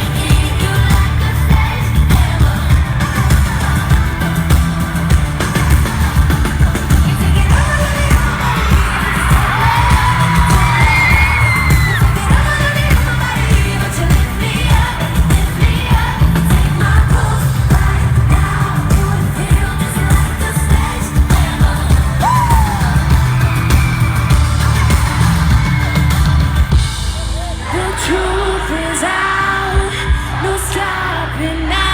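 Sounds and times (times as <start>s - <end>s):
crowd yelling and cheering: 0.0s - 31.9s
heavy bass backing track: 0.0s - 31.9s
woman singing pop music: 0.0s - 31.9s.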